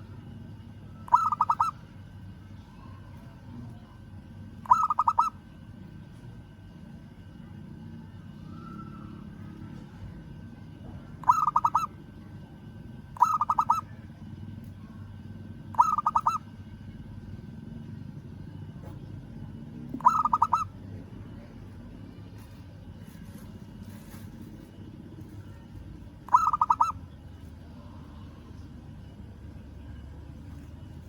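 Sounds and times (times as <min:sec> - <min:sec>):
dove cooing with trilled coos: 0:01.0 - 0:01.8, 0:04.6 - 0:05.4, 0:11.2 - 0:12.0, 0:13.2 - 0:13.9, 0:15.7 - 0:16.5, 0:20.0 - 0:20.8, 0:26.3 - 0:27.1.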